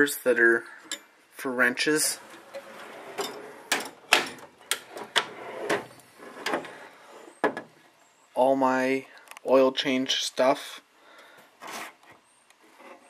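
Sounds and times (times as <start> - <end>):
metal tools clanking in drawer: 2.0 - 6.7.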